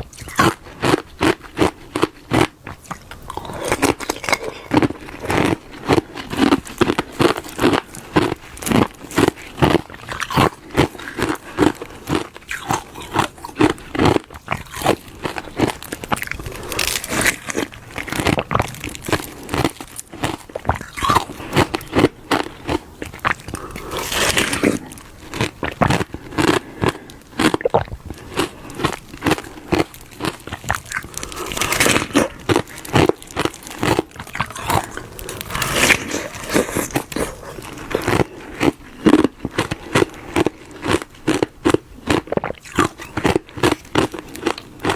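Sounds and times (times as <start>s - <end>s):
crunching ice: 0.0s - 44.9s.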